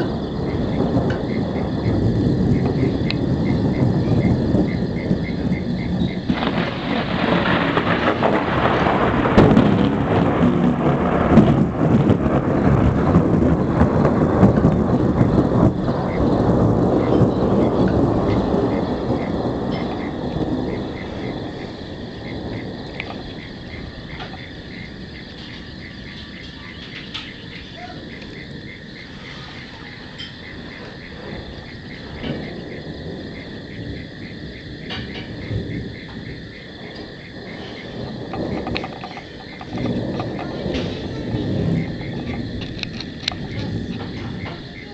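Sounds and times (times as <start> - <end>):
crickets chirping: 0.0 - 44.9
steady rain: 0.0 - 44.9
thunder rumbling: 0.0 - 44.9.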